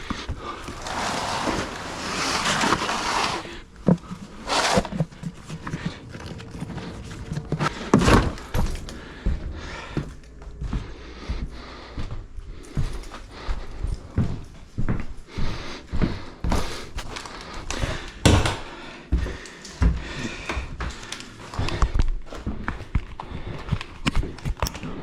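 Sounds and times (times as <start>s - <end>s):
handling rustling: 0.0s - 9.0s.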